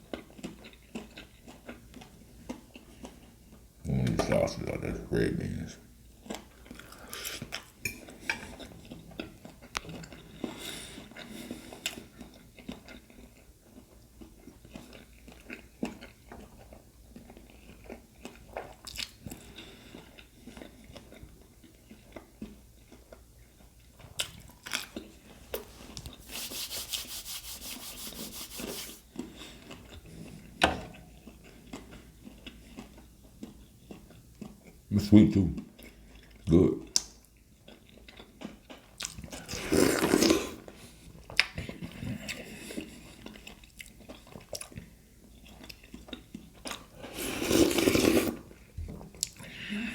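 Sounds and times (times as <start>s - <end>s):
chewing and biting food: 0.0s - 3.6s, 6.2s - 25.3s, 31.0s - 34.8s, 35.6s - 49.4s.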